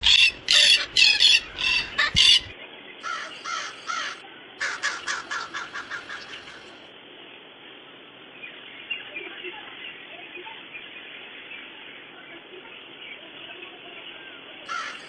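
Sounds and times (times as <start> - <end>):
crow cawing: 0.0 - 6.8, 14.7 - 15.0
quick repeated bird calls: 0.0 - 6.9.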